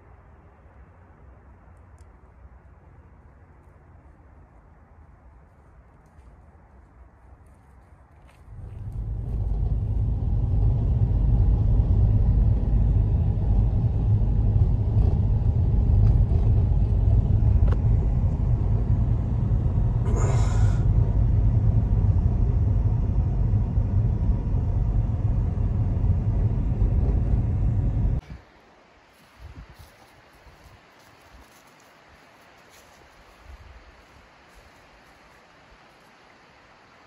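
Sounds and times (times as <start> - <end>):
loud low rumble: 8.5 - 28.3.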